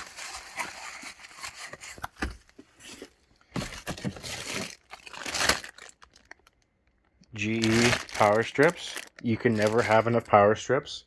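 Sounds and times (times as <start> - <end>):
packaging crinkling: 3.6 - 10.5.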